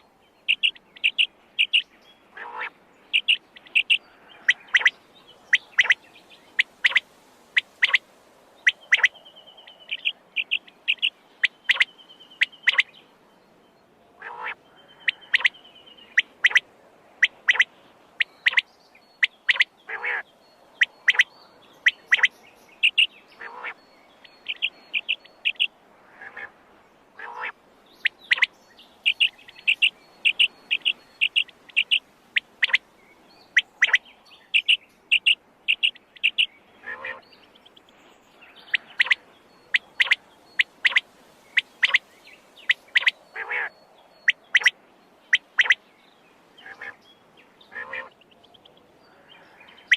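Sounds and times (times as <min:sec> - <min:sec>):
quail calling: 0:00.0 - 0:06.0, 0:06.6 - 0:08.0, 0:08.6 - 0:09.2, 0:09.8 - 0:12.9, 0:14.2 - 0:16.6, 0:17.2 - 0:18.6, 0:19.2 - 0:20.2, 0:20.8 - 0:26.6, 0:27.2 - 0:32.8, 0:33.5 - 0:37.2, 0:38.5 - 0:45.8, 0:46.6 - 0:47.0, 0:47.7 - 0:48.2.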